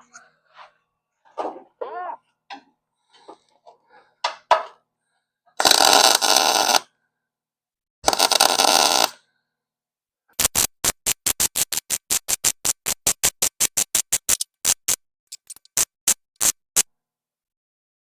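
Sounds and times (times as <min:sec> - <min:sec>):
welder tack bursts: 0:10.4 - 0:16.8.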